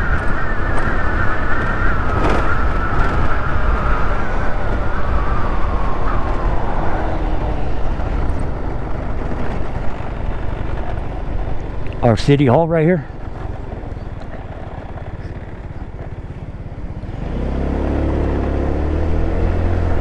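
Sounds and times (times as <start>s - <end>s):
scooter engine whine: 0.0s - 20.0s
wind rumble on microphone: 0.0s - 20.0s.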